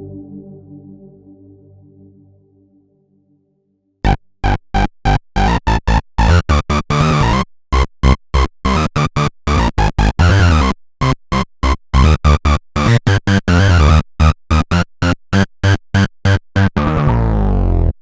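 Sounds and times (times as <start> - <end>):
synthesizer stabs: 0.0 - 1.8.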